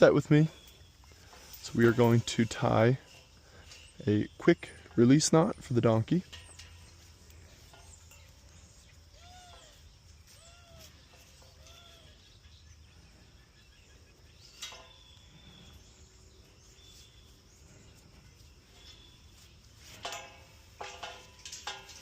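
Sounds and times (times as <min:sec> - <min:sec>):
sharp clicks and knocks: 0:19.9 - 0:22.0.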